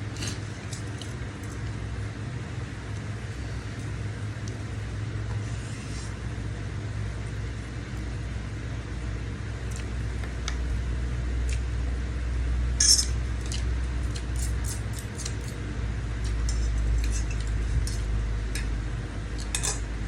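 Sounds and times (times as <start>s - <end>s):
steady low hum: 0.0s - 20.0s
cutlery clinking against dish: 12.8s - 13.2s, 19.5s - 19.8s.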